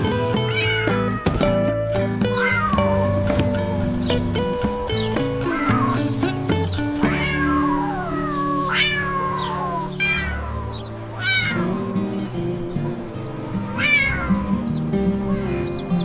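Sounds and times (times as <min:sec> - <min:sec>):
background music with held notes: 0:00.0 - 0:16.0
cat meowing: 0:00.4 - 0:01.6, 0:02.4 - 0:03.1, 0:07.0 - 0:11.7, 0:13.5 - 0:14.6, 0:15.3 - 0:15.7.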